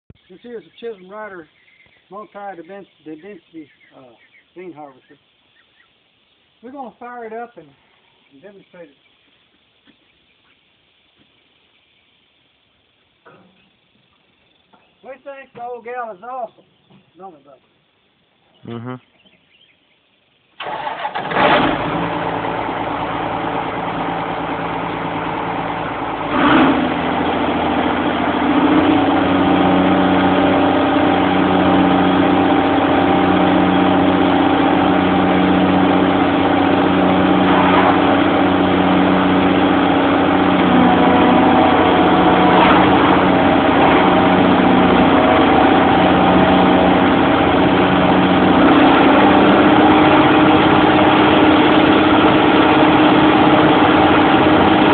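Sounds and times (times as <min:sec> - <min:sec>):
harvester engine running: 0:20.6 - 0:54.9
steady whine: 0:20.6 - 0:54.9.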